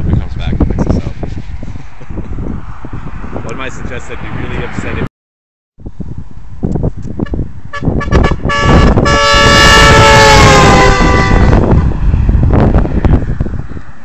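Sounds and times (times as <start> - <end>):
air horn blast: 7.2 - 12.0.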